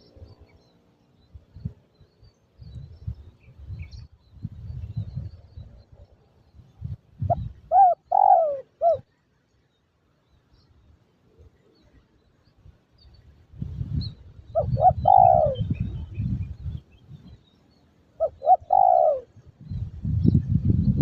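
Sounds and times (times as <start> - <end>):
wind rumble on microphone: 0.0 - 8.4, 12.6 - 21.0
dove cooing: 7.2 - 9.1, 14.5 - 16.2, 18.2 - 19.5.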